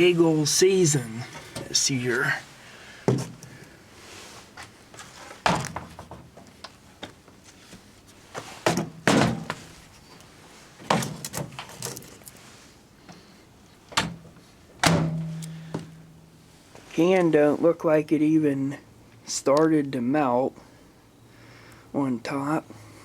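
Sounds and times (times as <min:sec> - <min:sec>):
clunks and knocks of handling: 0:03.1 - 0:03.5, 0:05.3 - 0:06.8, 0:08.4 - 0:09.7, 0:10.8 - 0:12.1.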